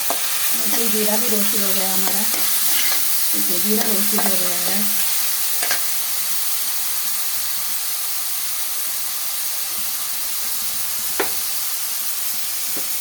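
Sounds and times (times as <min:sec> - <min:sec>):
mushrooms sizzling in a frying pan: 0:00.0 - 0:13.0.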